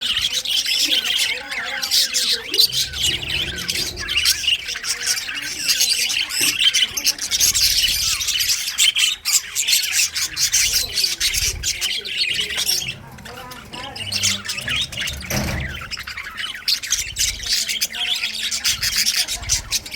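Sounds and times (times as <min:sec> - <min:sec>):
budgerigars chattering and chirping: 0:00.0 - 0:19.9.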